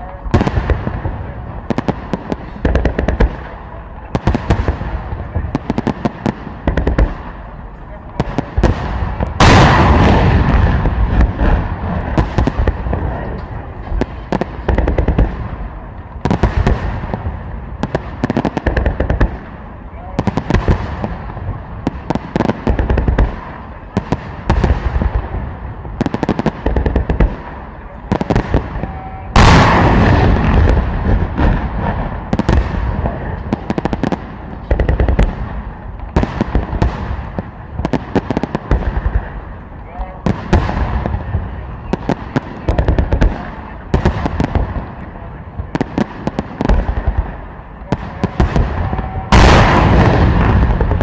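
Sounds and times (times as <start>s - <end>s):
firework crackling: 0.0s - 51.0s
firework shells booming: 0.2s - 51.0s.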